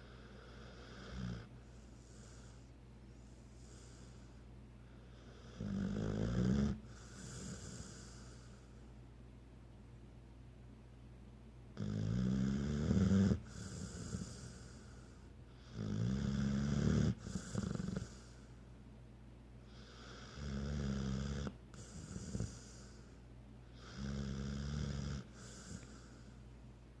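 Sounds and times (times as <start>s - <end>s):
person snoring: 5.3s - 8.5s, 15.7s - 18.3s, 23.8s - 26.1s.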